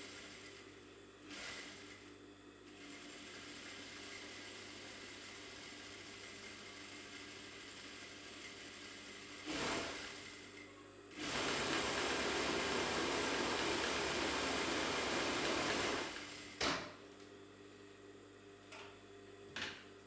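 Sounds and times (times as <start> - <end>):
sewing machine stitching: 7.9 - 10.5, 11.2 - 16.6.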